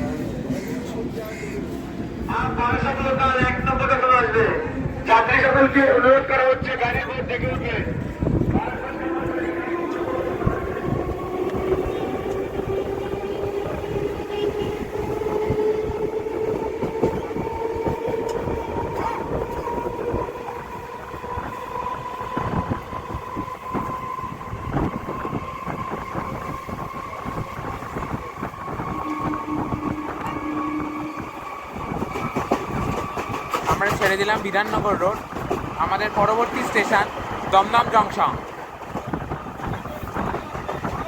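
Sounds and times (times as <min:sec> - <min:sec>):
wheels clacking over rail joints: 0:31.8 - 0:36.6.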